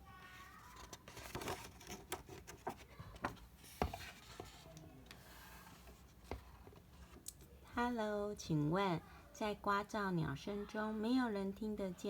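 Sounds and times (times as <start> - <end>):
paper rubbing: 0.3 - 7.2
book page turning: 0.4 - 7.2.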